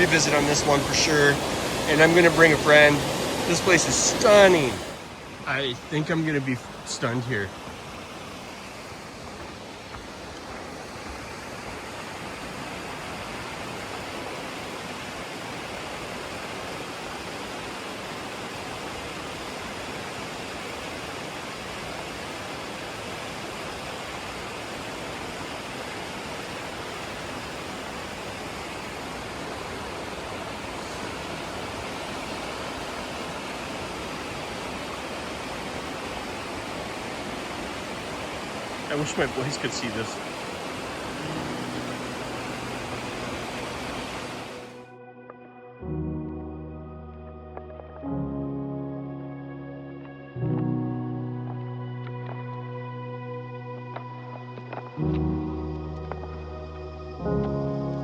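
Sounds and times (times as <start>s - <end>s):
waterfall rushing: 0.0s - 44.9s.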